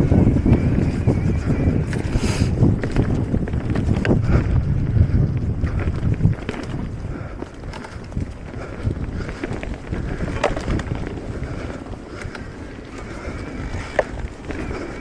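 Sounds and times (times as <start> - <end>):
bike rattling: 0.0 - 15.0
wind buffeting microphone: 0.0 - 15.0.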